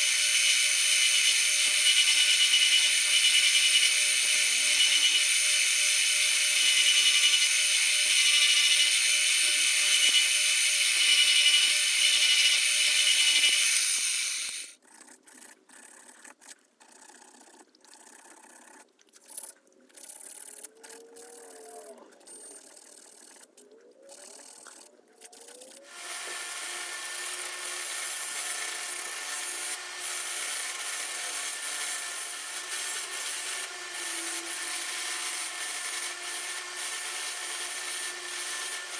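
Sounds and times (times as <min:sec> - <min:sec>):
power tool running: 0:00.0 - 0:14.7, 0:25.9 - 0:38.9
sanding or filing metal: 0:00.0 - 0:14.7, 0:25.9 - 0:38.9.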